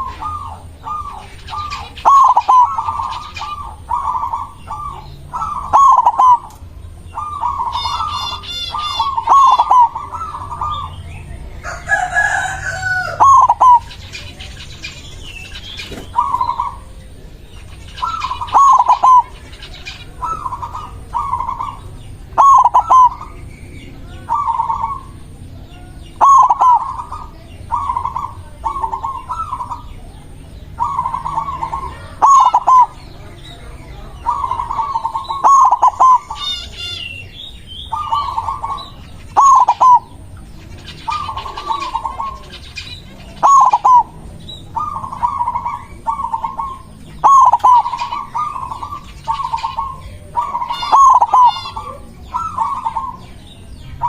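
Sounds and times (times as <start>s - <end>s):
dove cooing: 0.0s - 54.0s
small bird chirping: 0.0s - 54.0s
rooster crowing: 11.5s - 13.9s.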